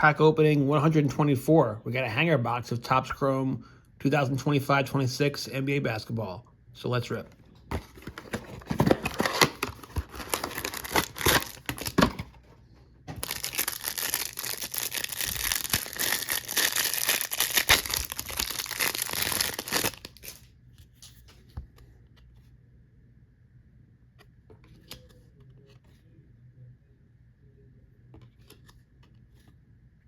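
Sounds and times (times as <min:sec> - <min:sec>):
cardboard box tearing: 0:07.8 - 0:12.2
wrapper crinkling: 0:07.8 - 0:12.2, 0:13.2 - 0:20.4.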